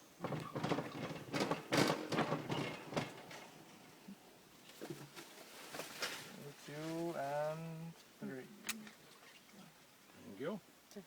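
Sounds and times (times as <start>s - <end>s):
rustling and crackling: 0.0s - 7.4s.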